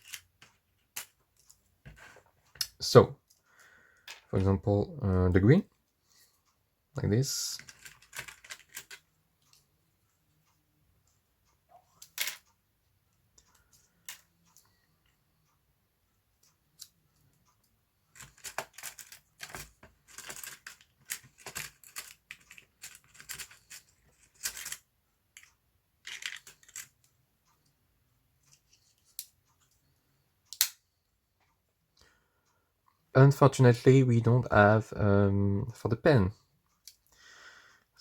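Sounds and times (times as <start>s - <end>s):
small plastic clicks and scraping: 7.5s - 9.6s, 16.4s - 27.1s.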